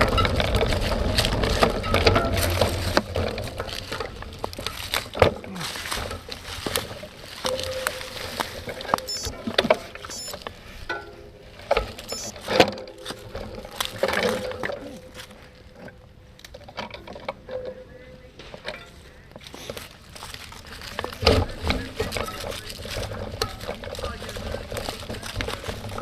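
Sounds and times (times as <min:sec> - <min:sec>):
wheels knocking on bumps: 0:00.0 - 0:09.2, 0:21.2 - 0:26.0
bicycle rattling over dirt trail: 0:00.0 - 0:26.0
faint steady whine: 0:12.0 - 0:12.4.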